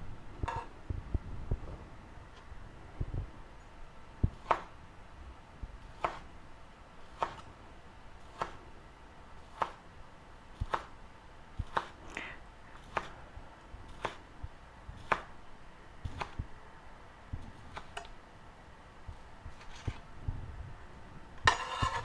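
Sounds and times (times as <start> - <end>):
knife slicing sausage: 4.4 - 4.8, 5.8 - 6.3, 7.1 - 7.5, 8.2 - 8.6, 9.4 - 9.9, 10.6 - 11.0, 11.6 - 13.2, 13.9 - 14.3, 14.9 - 15.4, 16.1 - 16.4, 17.4 - 18.1, 21.5 - 22.0.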